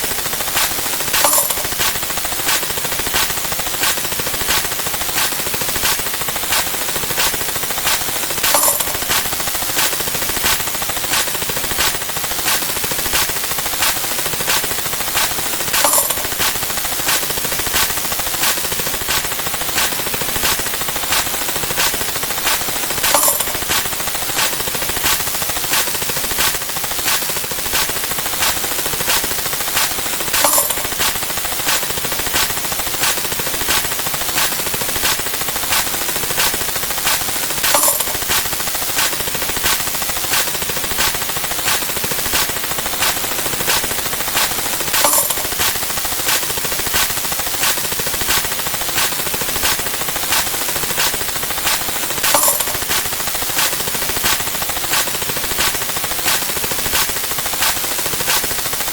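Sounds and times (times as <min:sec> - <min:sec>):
rapid clicks: 0:00.0 - 0:58.9
bright ringing clink: 0:08.6 - 0:09.2.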